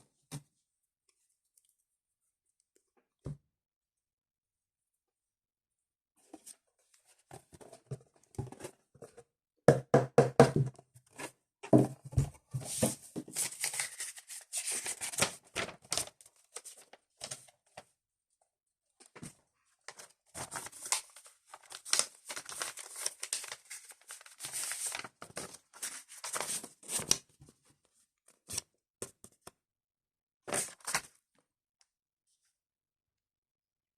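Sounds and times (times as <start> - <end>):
card packaging ripping and rustling: 12.8 - 17.4, 20.4 - 27.2.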